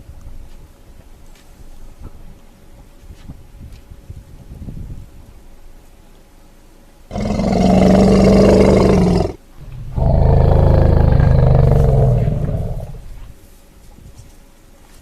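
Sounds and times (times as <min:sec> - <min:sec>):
elephant calling: 0:07.1 - 0:13.3.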